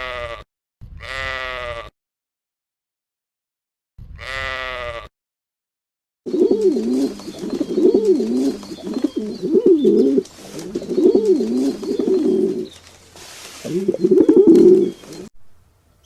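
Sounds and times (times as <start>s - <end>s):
short bleat: 0.0s - 1.9s, 4.2s - 5.1s
pigeons cooing: 6.3s - 12.8s, 13.5s - 15.3s.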